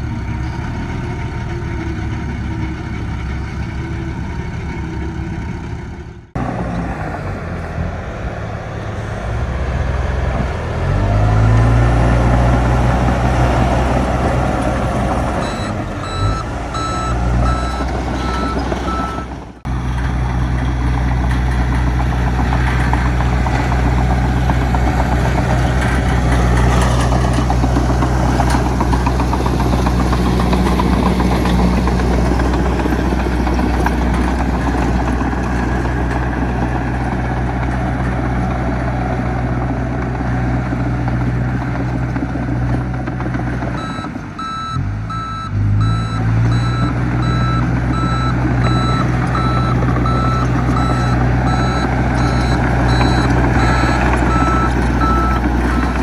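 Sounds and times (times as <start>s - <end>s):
heavy diesel engine running: 0.0s - 56.0s
reversing alarm beeping: 15.4s - 19.4s, 43.8s - 56.0s.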